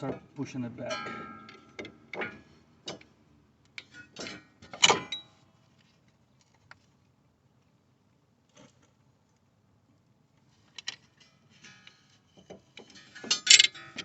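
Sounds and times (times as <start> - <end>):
metal clamp scraping clanks: 0.9 - 3.1, 10.8 - 14.0.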